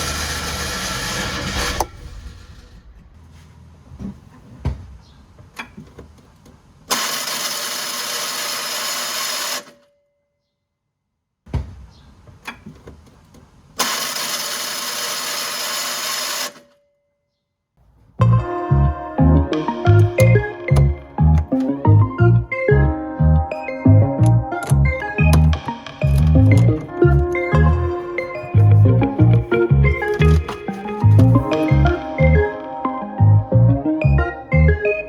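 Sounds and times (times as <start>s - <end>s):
starter motor whirring: 0.0s - 3.2s, 6.9s - 9.8s, 13.8s - 16.6s.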